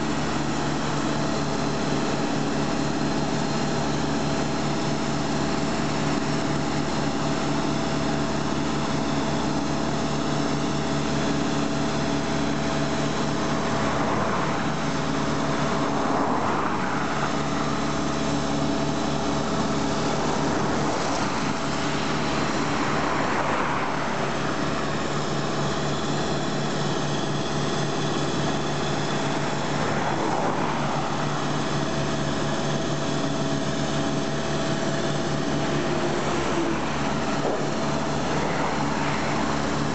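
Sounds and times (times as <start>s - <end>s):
construction machine engine drone: 0.0s - 39.9s.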